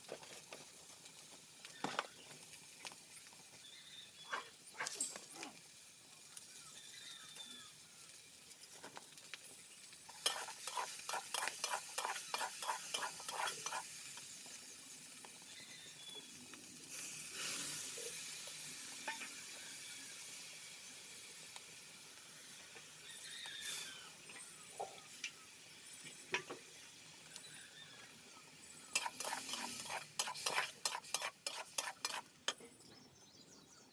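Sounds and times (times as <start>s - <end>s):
food sizzling in hot oil: 0.0s - 32.6s
spoon scraping food in pan: 10.1s - 13.9s, 28.8s - 32.7s.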